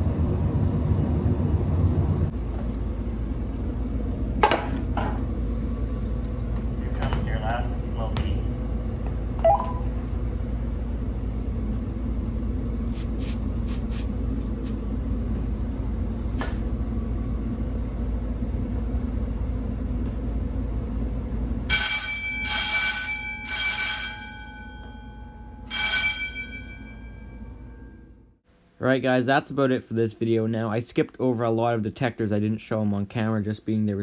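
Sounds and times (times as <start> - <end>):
air-handling unit rumble: 0.0 - 28.4
short high-pitched ringing tones: 21.7 - 28.2.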